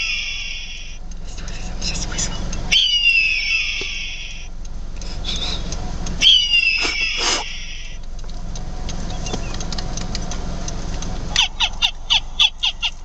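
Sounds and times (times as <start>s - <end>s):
short downward sliding bird calls: 0.0s - 1.0s, 2.7s - 4.5s, 6.2s - 8.0s
whistled bird calls: 0.0s - 1.0s, 2.7s - 4.5s, 6.2s - 8.0s
low background rumble: 0.0s - 13.0s.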